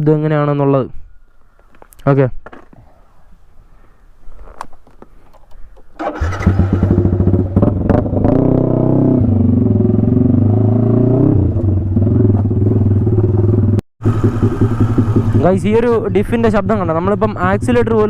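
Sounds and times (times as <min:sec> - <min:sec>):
motorcycle engine idling: 0:11.6 - 0:18.0.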